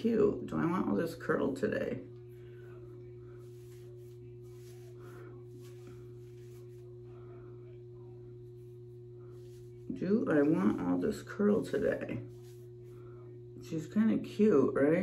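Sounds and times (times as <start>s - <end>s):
low electrical hum: 0.0s - 15.0s
faint soft rustles: 2.2s - 13.4s.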